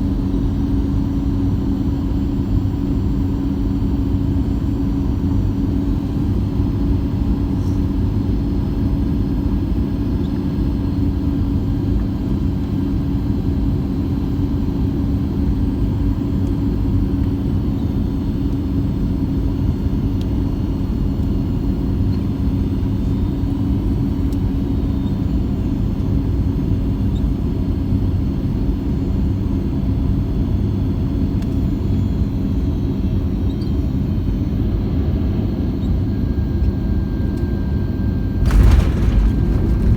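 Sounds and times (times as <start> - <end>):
airplane cabin rumble: 38.2 - 39.9
constant hum: 38.2 - 39.9.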